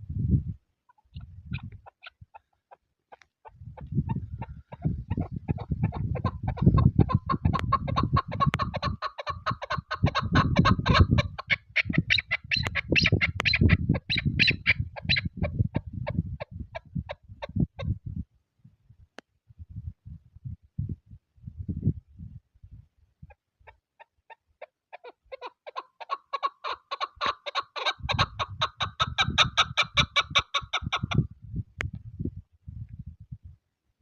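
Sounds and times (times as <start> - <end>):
partridge rapid clucking calls: 0.9 - 18.0, 23.2 - 31.3.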